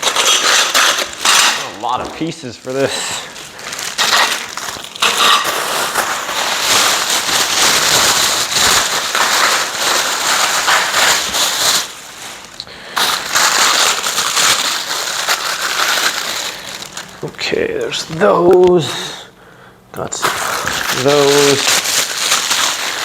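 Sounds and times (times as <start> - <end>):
plastic packaging crinkling: 0.0 - 19.3, 20.0 - 23.0.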